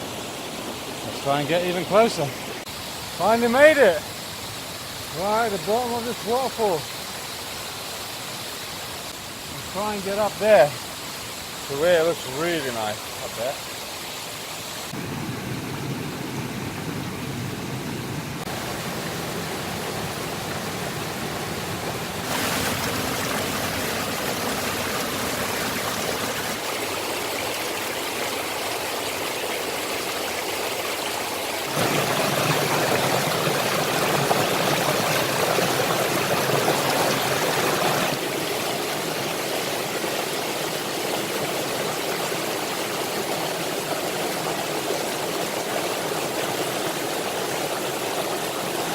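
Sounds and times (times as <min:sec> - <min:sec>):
waterfall rushing: 0:00.0 - 0:15.3, 0:16.1 - 0:48.9.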